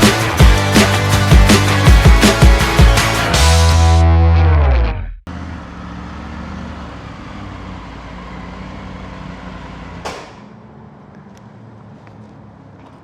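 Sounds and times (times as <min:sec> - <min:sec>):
wind and road noise: 0:05.3 - 0:13.0.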